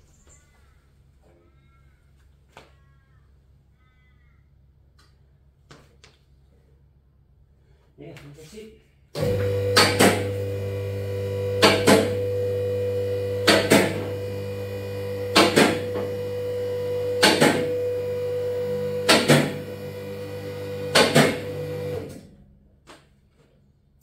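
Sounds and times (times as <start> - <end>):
electric hoist motor humming: 9.1 - 22.4.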